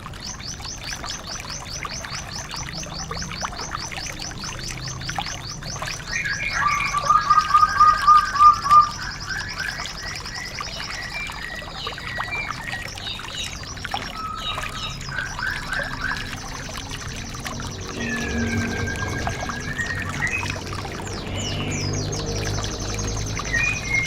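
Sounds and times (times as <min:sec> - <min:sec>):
repeated lower whistled notes: 0:17.4 - 0:21.8
fast high bird trills: 0:17.5 - 0:22.3.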